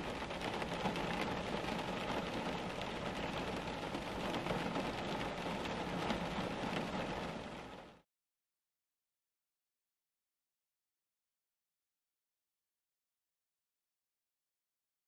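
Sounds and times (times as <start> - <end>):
steady rain falling: 0.0 - 8.0.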